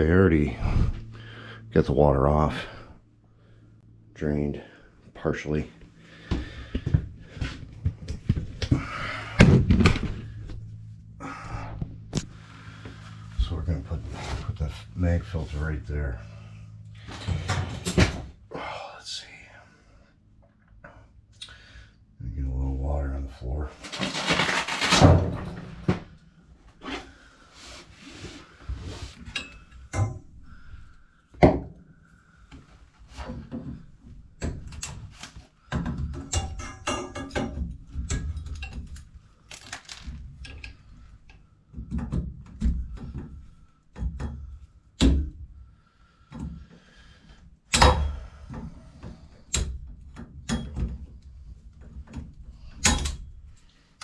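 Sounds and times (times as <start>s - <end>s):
tools and plumbing parts clunking: 6.1s - 18.4s, 23.7s - 27.2s, 28.6s - 31.8s, 32.4s - 45.6s, 46.2s - 53.8s.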